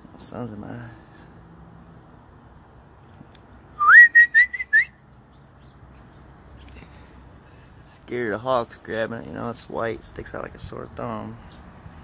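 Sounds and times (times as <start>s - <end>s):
person whistling: 3.8s - 5.0s.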